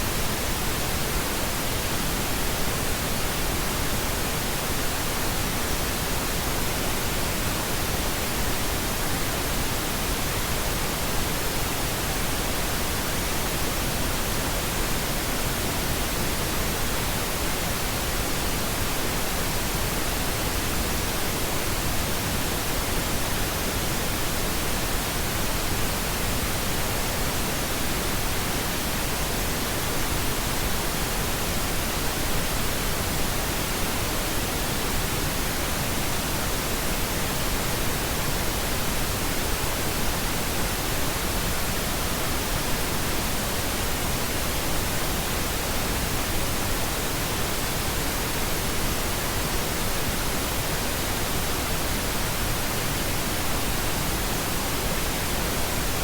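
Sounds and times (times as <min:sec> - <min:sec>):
pink noise hiss: 0:00.0 - 0:56.0.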